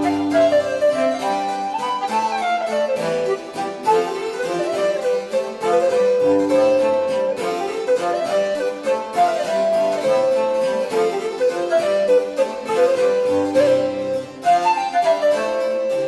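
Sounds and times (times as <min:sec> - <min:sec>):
harpsichord music: 0:00.0 - 0:16.0.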